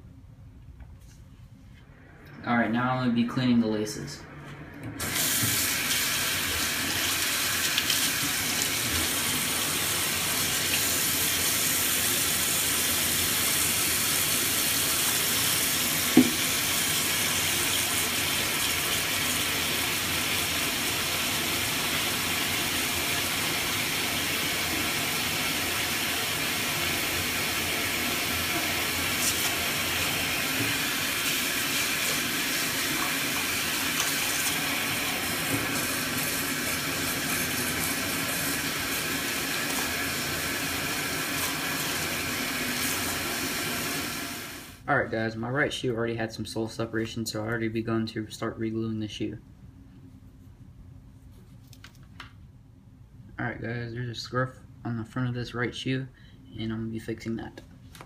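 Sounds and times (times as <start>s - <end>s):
tap water running into sink: 5.0s - 44.5s.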